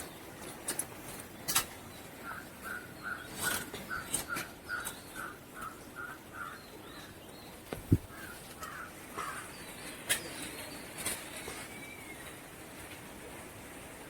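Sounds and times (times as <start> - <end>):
bird calling: 2.2 - 10.5.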